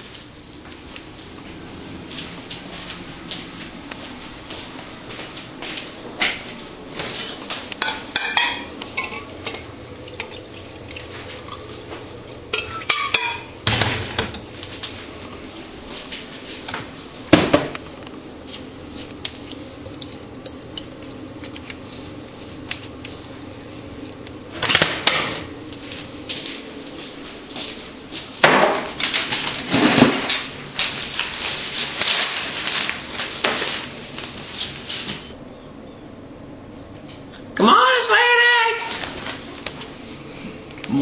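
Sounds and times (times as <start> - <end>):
dishes and cutlery clattering: 7.8 - 10.4, 12.6 - 13.5
glassy clinks: 20.4 - 21.0.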